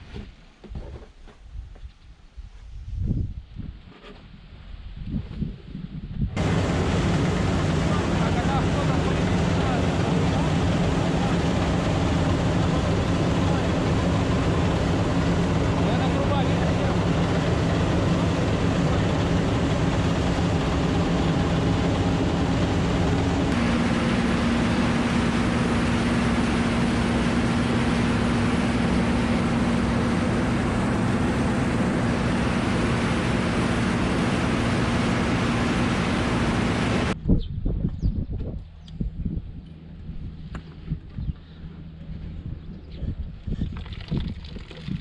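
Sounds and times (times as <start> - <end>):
wind noise: 0.0 - 7.9, 29.5 - 45.0
farm machine engine running: 6.4 - 37.2.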